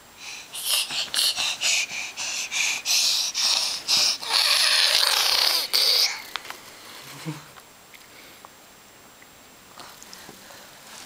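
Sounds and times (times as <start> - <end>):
baby breathing hard: 0.2 - 4.8.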